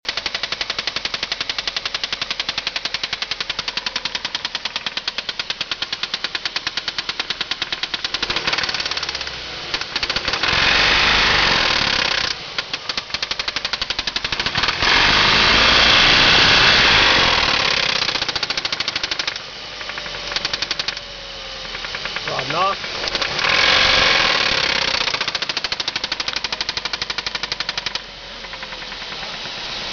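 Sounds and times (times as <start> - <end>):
car engine knocking: 0.1 - 21.0, 21.6 - 29.9
engine revving: 7.6 - 21.1, 21.7 - 29.9.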